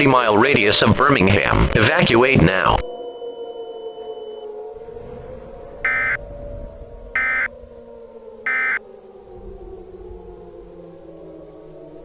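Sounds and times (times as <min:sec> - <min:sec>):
harsh buzzing data bursts: 0:05.9 - 0:06.2, 0:07.2 - 0:07.5, 0:08.5 - 0:08.8.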